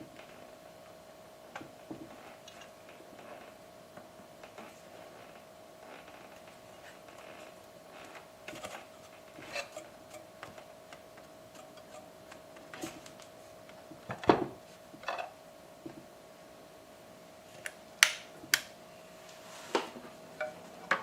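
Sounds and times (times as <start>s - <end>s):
faint hum: 0.0s - 21.0s.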